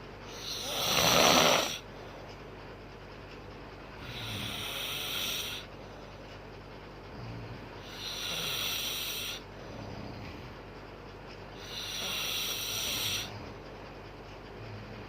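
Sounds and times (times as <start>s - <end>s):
woman snoring: 0.3s - 1.8s, 4.0s - 5.7s, 7.2s - 10.2s, 11.6s - 13.4s.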